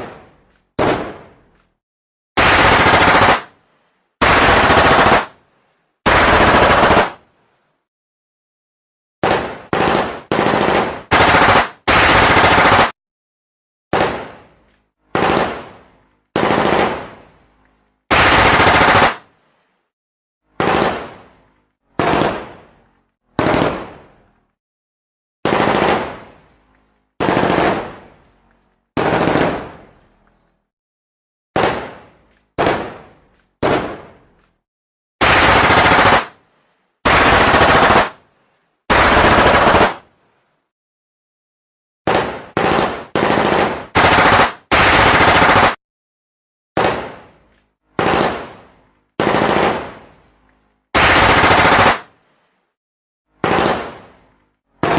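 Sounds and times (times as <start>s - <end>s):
gunshots: 0.0s - 1.4s, 2.4s - 3.6s, 4.2s - 5.4s, 6.1s - 7.2s, 9.2s - 13.0s, 13.9s - 14.5s, 15.1s - 17.2s, 18.1s - 19.3s, 20.5s - 21.4s, 22.0s - 22.8s, 23.4s - 24.2s, 25.4s - 26.4s, 27.2s - 28.1s, 29.0s - 30.0s, 31.6s - 34.2s, 35.2s - 36.4s, 37.0s - 38.2s, 38.9s - 40.0s, 42.1s - 45.8s, 46.8s - 47.4s, 48.0s - 50.1s, 51.0s - 52.1s, 53.4s - 54.2s
automatic gunfire bursts: 2.4s - 3.5s, 4.2s - 5.4s, 6.1s - 7.2s, 9.2s - 12.9s, 15.1s - 15.7s, 16.3s - 17.2s, 18.1s - 19.2s, 20.6s - 21.1s, 22.0s - 22.5s, 23.4s - 23.9s, 25.4s - 26.2s, 27.2s - 27.9s, 29.0s - 29.8s, 35.2s - 36.4s, 37.1s - 38.2s, 38.9s - 40.0s, 42.1s - 45.8s, 48.0s - 48.6s, 49.2s - 50.0s, 51.0s - 52.1s, 53.4s - 54.0s.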